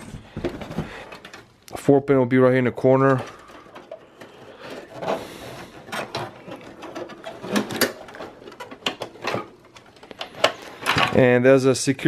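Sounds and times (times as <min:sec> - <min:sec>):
plastic connector clicking and rattling: 0:05.9 - 0:11.2.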